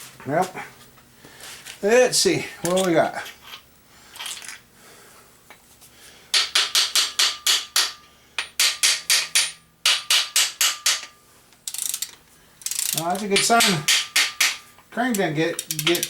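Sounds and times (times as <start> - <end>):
hammer tapping on metal: 6.3 - 11.2, 13.2 - 14.7.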